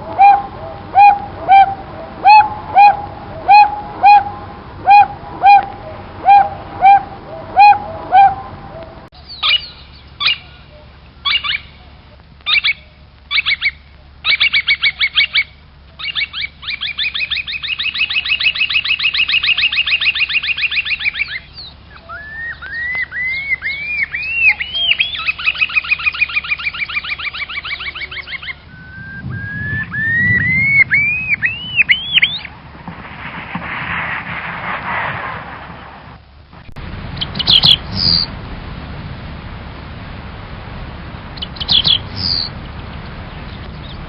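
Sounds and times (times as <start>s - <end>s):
bird trilling: 0.0s - 11.8s, 12.5s - 32.5s, 37.2s - 38.3s, 41.4s - 42.5s
short high bird calls: 0.2s - 11.8s, 12.5s - 32.5s, 41.4s - 42.5s
bird whistles: 9.3s - 10.6s, 12.5s - 32.5s, 37.2s - 38.3s, 41.4s - 42.5s.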